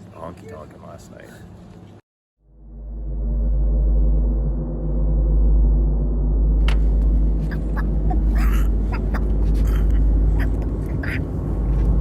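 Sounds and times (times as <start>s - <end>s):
steady low rumble: 2.4s - 12.0s.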